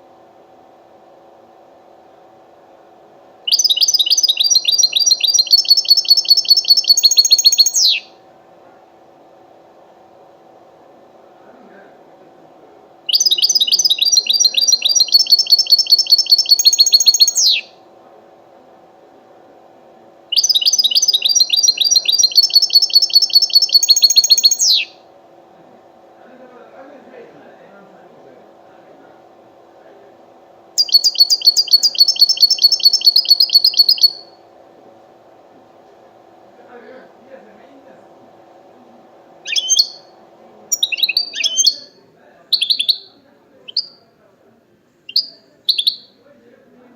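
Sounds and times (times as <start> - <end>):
goldfinch trilling: 3.5 - 8.1, 13.1 - 17.7, 20.4 - 24.9, 30.8 - 34.3, 39.4 - 40.1, 40.7 - 41.9.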